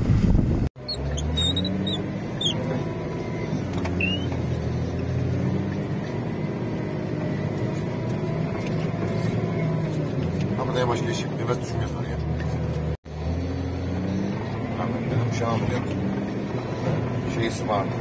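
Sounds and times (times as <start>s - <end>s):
vehicle engine running: 0.0s - 18.0s
brief high squeaks: 0.8s - 4.6s.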